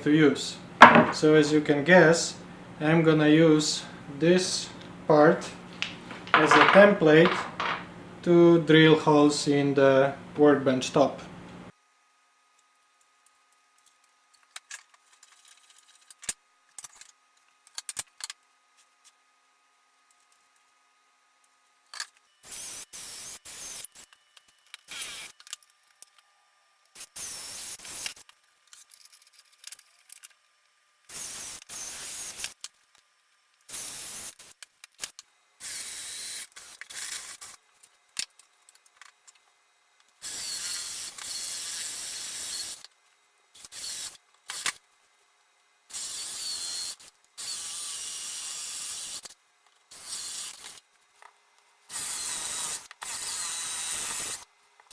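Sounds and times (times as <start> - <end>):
drill bit cutting into wood: 24.9 - 25.3, 27.0 - 28.1, 31.1 - 32.5, 35.6 - 37.5, 40.2 - 42.9, 43.6 - 44.7, 45.9 - 49.3, 49.9 - 50.8, 51.9 - 54.5.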